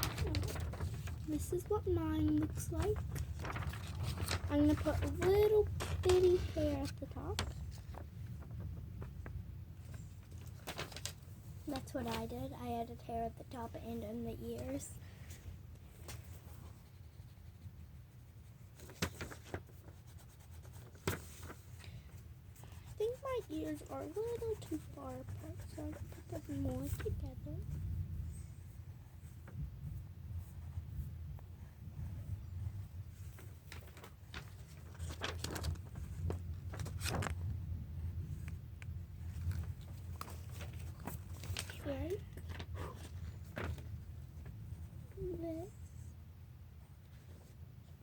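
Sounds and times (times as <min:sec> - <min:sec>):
steady low hum: 0:00.0 - 0:19.0
pencil drawing on paper: 0:22.6 - 0:27.2.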